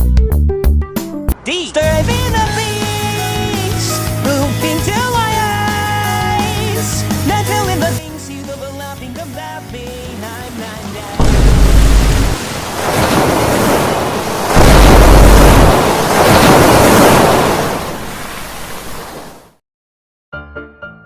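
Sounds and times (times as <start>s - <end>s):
music: 0.0s - 11.2s, 20.3s - 21.0s
deep rumbles: 11.2s - 17.3s
loud roaring rushing noise: 11.2s - 18.2s.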